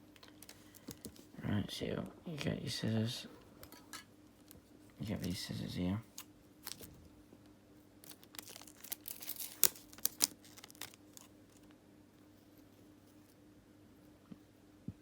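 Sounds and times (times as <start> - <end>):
tape crinkling and tearing: 6.1 - 7.1, 8.0 - 11.7.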